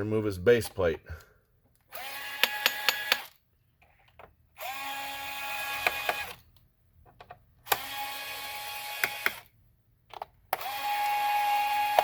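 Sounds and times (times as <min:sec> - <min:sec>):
power screwdriver motor whine: 0:01.9 - 0:03.4, 0:04.6 - 0:06.4, 0:07.7 - 0:09.5, 0:10.5 - 0:12.0
screwdriver clicking: 0:02.3 - 0:03.4.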